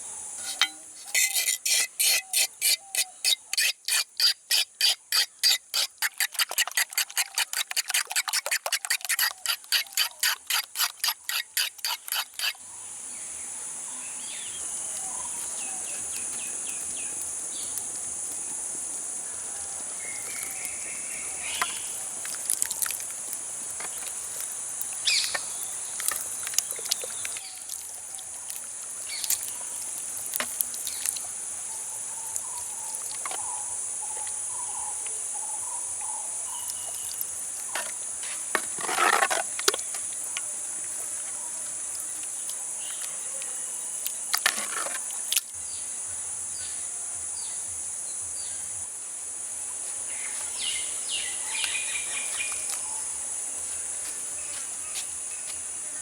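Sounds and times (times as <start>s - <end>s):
high-pitched insect chorus: 8.2s - 56.0s.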